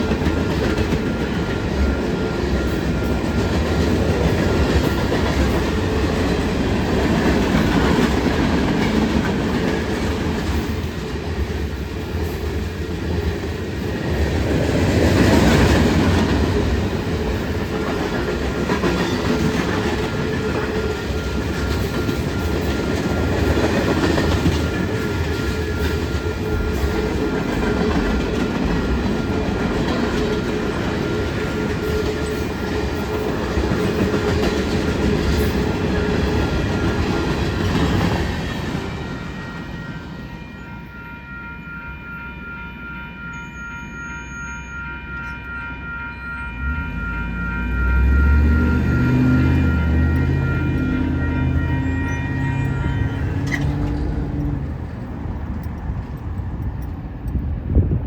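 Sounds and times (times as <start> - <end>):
train wheels clacking on rails: 0.0 - 40.2, 46.6 - 58.0.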